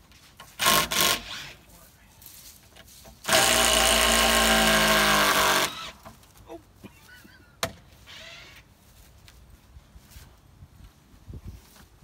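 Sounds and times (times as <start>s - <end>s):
power drill running: 3.3s - 6.0s.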